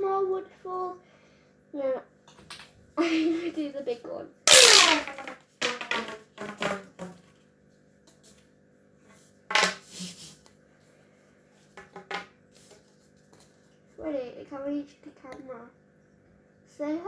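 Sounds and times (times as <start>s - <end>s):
pop tube toy popping and ringing: 4.5s - 5.0s.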